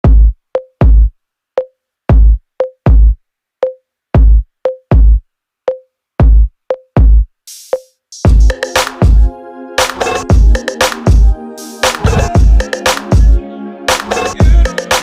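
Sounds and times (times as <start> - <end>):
deep kick drums: 0.0 - 1.1, 2.1 - 3.2, 4.2 - 5.2, 6.2 - 7.3, 8.3 - 9.3, 10.3 - 11.4, 12.0 - 13.4, 14.4 - 14.7.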